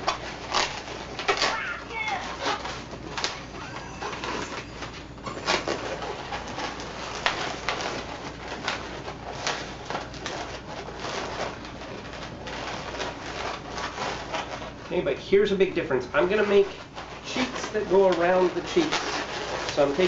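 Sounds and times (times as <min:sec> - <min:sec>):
balloons squeaking and rubbing: 0:00.0 - 0:20.0.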